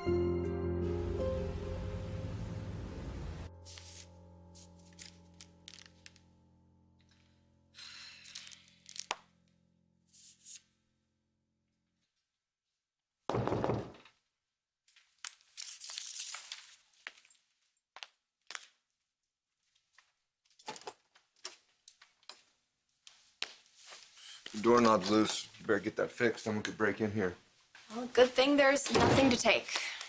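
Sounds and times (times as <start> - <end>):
transition music held notes: 0.0 - 6.2.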